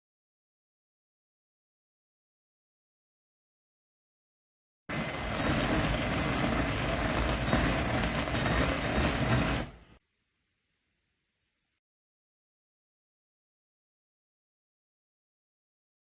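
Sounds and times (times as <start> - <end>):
coffee grinder crunching beans: 4.9 - 10.0.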